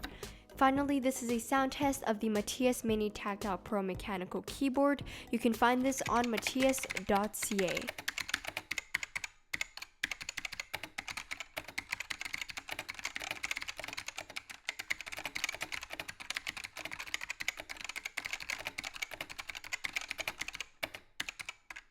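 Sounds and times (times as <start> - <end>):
clicky keyboard typing: 5.6 - 21.9.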